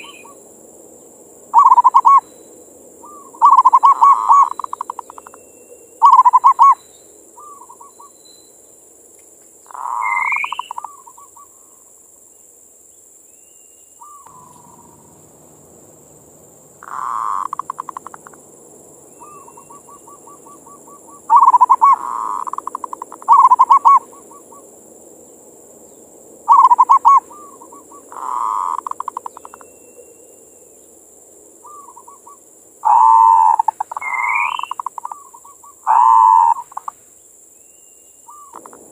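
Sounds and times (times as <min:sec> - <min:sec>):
faint steady hum: 0:00.0 - 0:38.9
dove cooing: 0:01.5 - 0:02.2, 0:03.0 - 0:05.3, 0:06.0 - 0:06.8, 0:09.7 - 0:11.6, 0:14.0 - 0:24.7, 0:26.4 - 0:29.6, 0:31.6 - 0:36.9.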